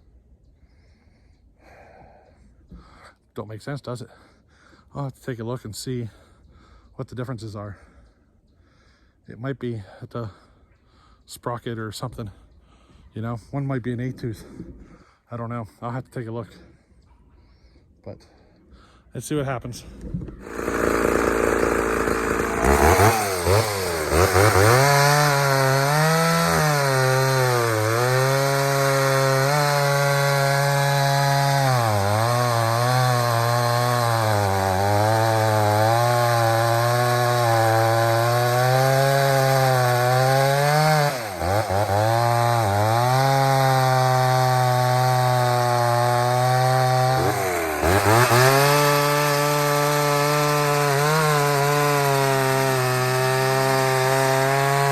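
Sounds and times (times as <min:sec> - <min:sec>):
chainsaw cutting wood: 0:20.3 - 0:54.9.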